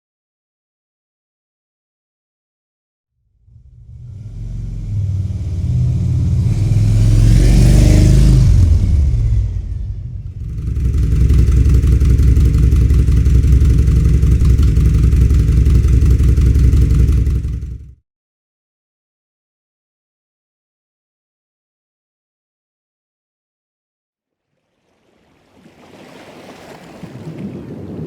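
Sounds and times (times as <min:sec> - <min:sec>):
motor vehicle passing by: 0:03.4 - 0:17.9
engine running steadily: 0:03.5 - 0:18.0.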